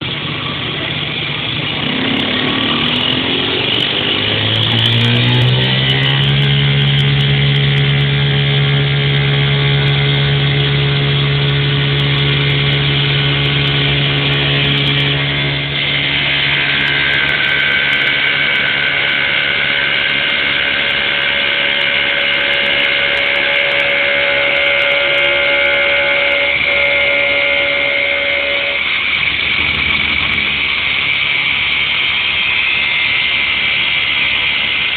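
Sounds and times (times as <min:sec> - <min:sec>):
wood lathe motor whine: 0:00.0 - 0:34.9
hissing noise: 0:11.0 - 0:34.9.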